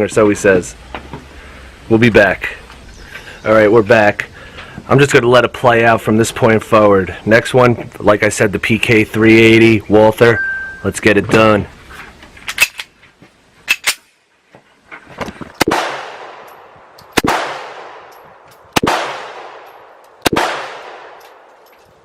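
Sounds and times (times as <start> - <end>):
pistol shots with echo: 15.6 - 21.5.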